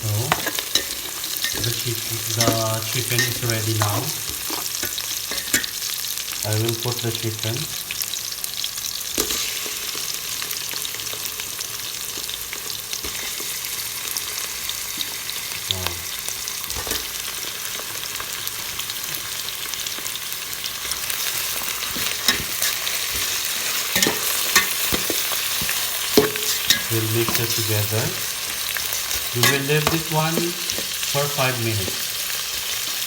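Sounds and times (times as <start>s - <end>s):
chicken frying sizzle: 0.0s - 33.0s.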